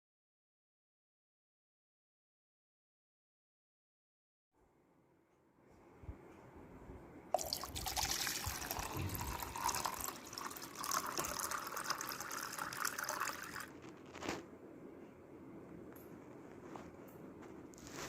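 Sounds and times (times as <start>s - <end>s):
water being poured: 7.4s - 13.8s.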